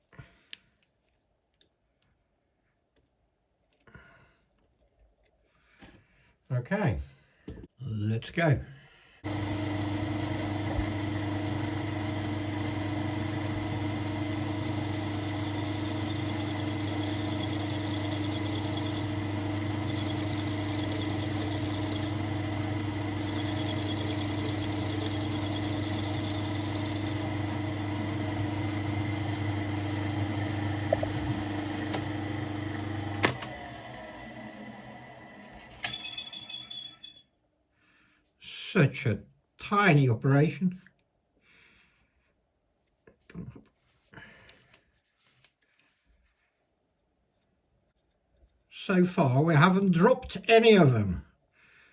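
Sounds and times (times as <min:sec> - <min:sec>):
metal lathe running: 0:09.3 - 0:36.8.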